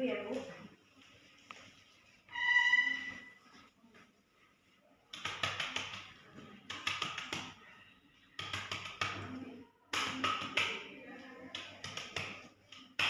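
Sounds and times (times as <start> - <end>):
cupped hands patting chest: 5.1 - 7.6, 8.4 - 9.3, 11.5 - 13.0.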